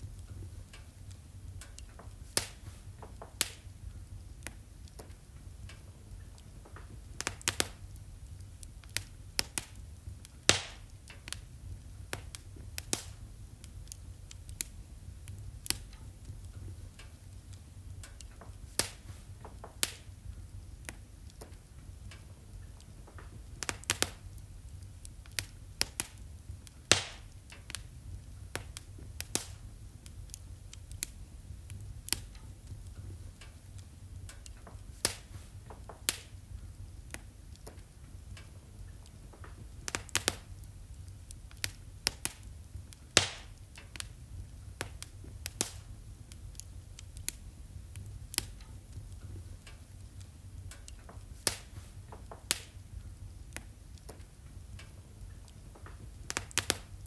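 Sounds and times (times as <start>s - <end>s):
fire crackling in a fireplace: 0.0s - 57.0s
low steady rumble: 0.0s - 57.0s.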